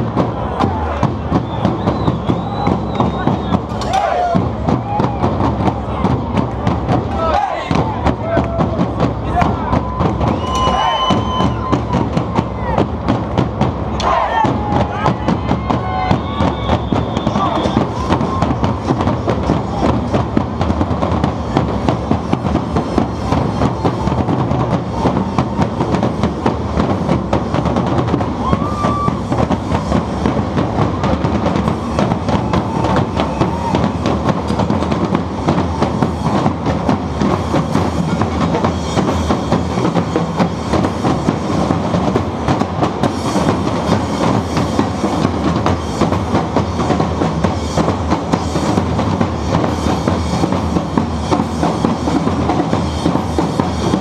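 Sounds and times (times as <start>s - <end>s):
percussion band drumming: 0.0s - 54.0s.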